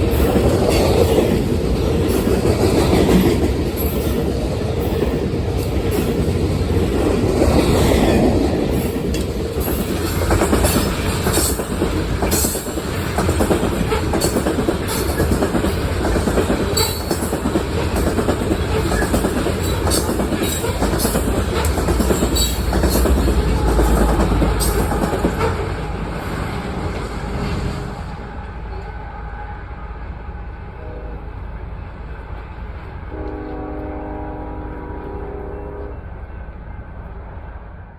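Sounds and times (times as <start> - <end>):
wheels clacking over rail joints: 0.0 - 27.7
train wheels rumbling on rail: 0.0 - 37.9.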